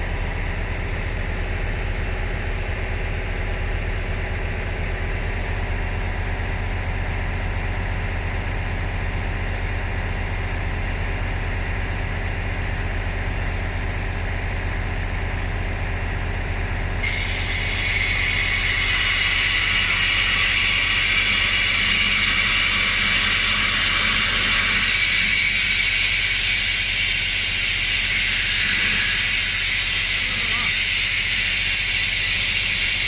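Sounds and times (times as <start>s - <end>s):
compressed air hissing: 17.0s - 33.0s.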